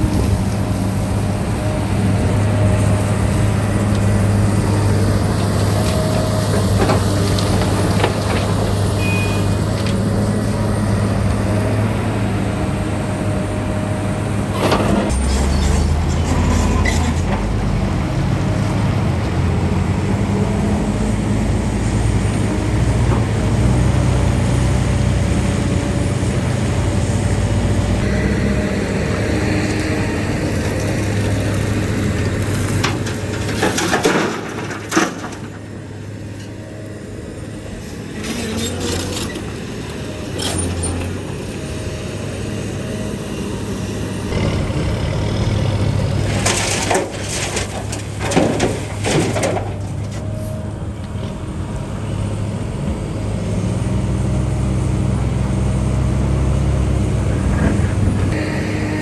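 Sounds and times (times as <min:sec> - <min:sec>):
heavy diesel engine running: 0:00.0 - 0:59.0
metal knocks and clanks: 0:32.2 - 0:35.7, 0:46.0 - 0:50.4.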